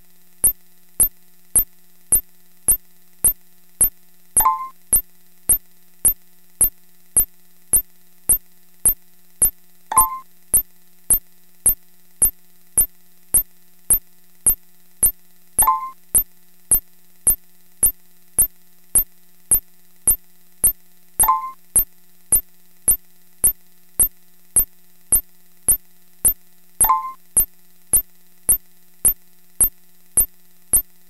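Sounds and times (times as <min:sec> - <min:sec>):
short beep: 0:04.4 - 0:04.7, 0:09.9 - 0:10.2, 0:15.6 - 0:16.0, 0:21.2 - 0:21.6, 0:26.8 - 0:27.2
evenly repeating sharp clicks: 0:22.3 - 0:27.5.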